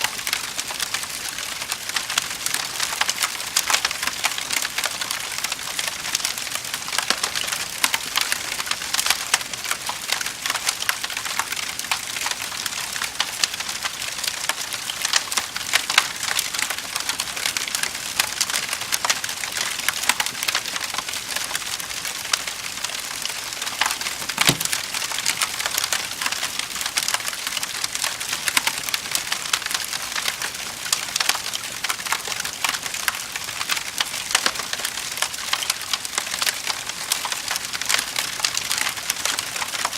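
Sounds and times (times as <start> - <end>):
wood fire crackling: 20.5 - 36.8.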